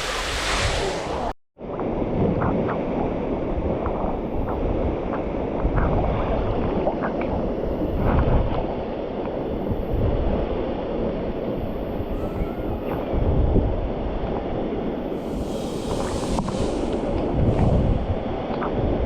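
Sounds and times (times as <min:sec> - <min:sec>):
water splashing: 0:00.0 - 0:01.3
waterfall rushing: 0:00.0 - 0:01.3.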